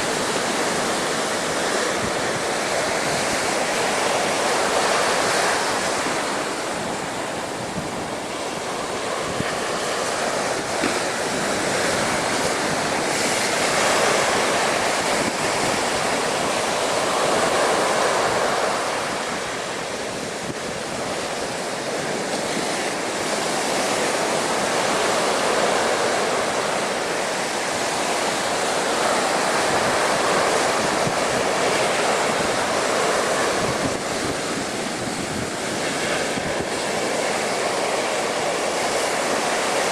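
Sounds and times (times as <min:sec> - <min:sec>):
waves breaking against sea wall: 0:00.0 - 0:39.9
wind on microphone: 0:00.0 - 0:39.9.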